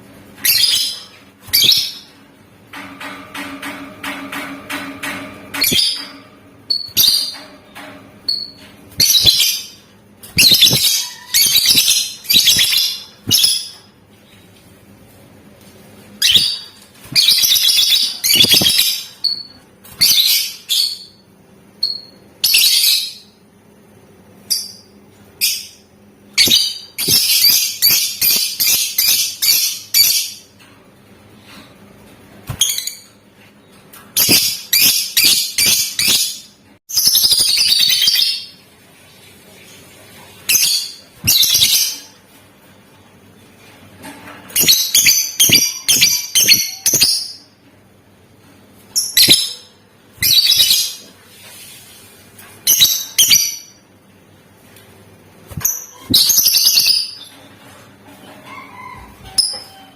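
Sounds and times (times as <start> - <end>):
shrill bird chirps: 8.3 - 9.8, 10.4 - 13.8, 16.2 - 21.2.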